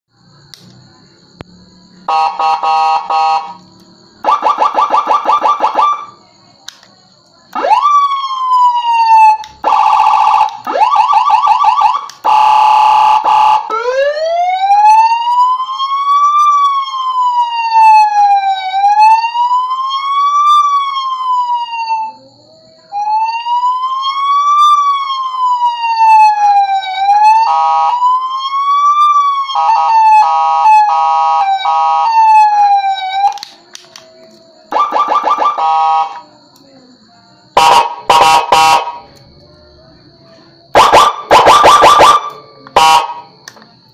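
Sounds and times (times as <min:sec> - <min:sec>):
electronic siren tones: 0:04.2 - 0:06.1, 0:34.7 - 0:36.2, 0:37.6 - 0:39.0, 0:40.8 - 0:43.3.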